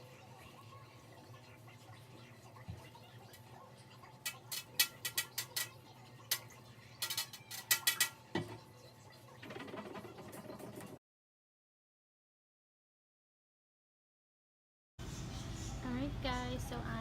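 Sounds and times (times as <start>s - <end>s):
household items clinking and clattering: 4.2s - 8.7s, 9.4s - 11.0s.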